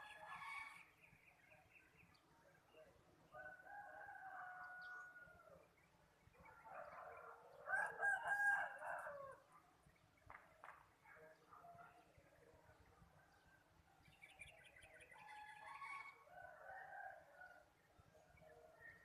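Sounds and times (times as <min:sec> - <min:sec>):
rooster crowing: 0:07.7 - 0:09.4.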